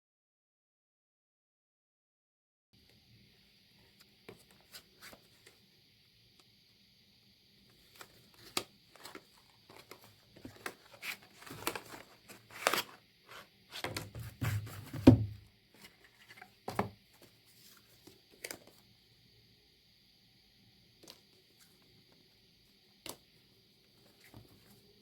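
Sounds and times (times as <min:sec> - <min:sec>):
packaging rustling: 0:07.9 - 0:15.2.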